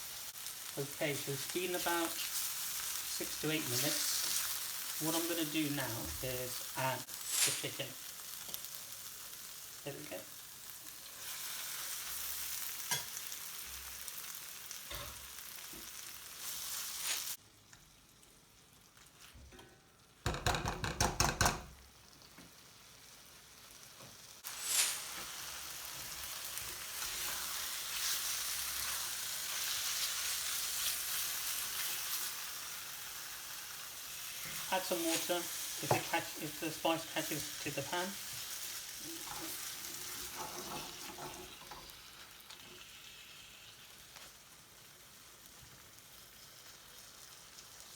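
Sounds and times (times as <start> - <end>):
chicken sizzling in a pan: 0.0 - 47.9
stirring in a pan: 24.4 - 44.4.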